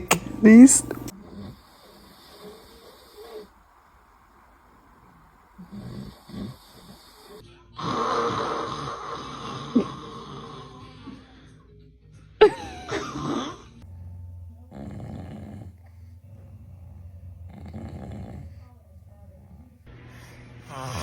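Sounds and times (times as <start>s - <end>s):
loud snoring: 5.6s - 11.3s, 12.9s - 19.6s, 20.6s - 21.0s.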